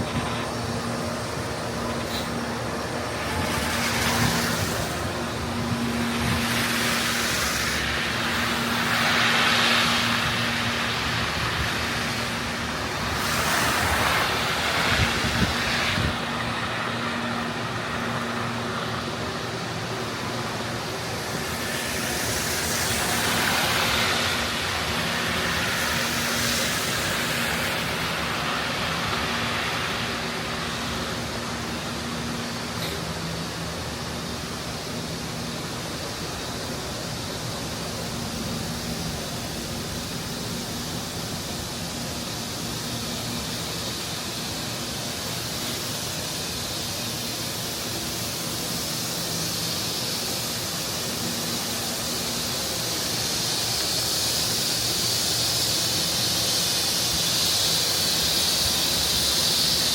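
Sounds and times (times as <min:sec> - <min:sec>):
vehicles passing: 0:00.0 - 0:32.4
steady traffic hum: 0:00.0 - 0:59.9.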